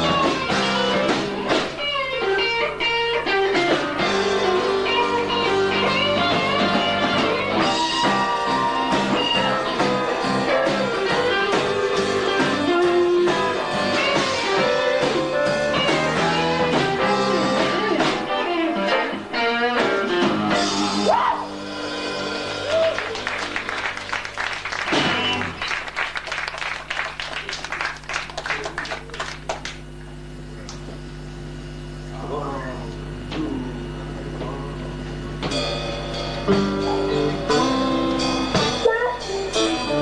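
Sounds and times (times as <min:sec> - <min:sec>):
live rock band playing: 0:00.0 - 0:26.3, 0:35.4 - 0:40.0
electric guitars: 0:00.0 - 0:31.5, 0:33.0 - 0:40.0.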